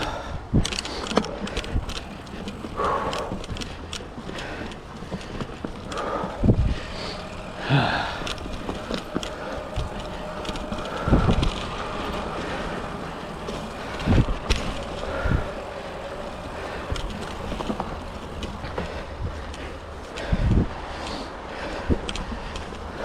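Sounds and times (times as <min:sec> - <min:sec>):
bike rattles and clicks: 0:00.0 - 0:23.0
bike tyres rolling on dirt: 0:00.0 - 0:23.0
wind on microphone: 0:05.9 - 0:21.0.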